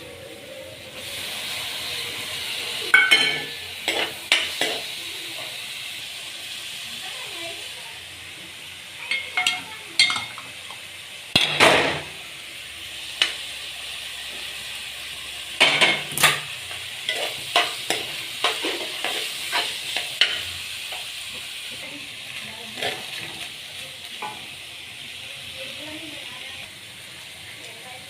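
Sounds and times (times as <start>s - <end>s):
food sizzling in frying pan: 0.0s - 28.0s
utensil scraping pan: 15.6s - 21.0s, 22.7s - 23.5s.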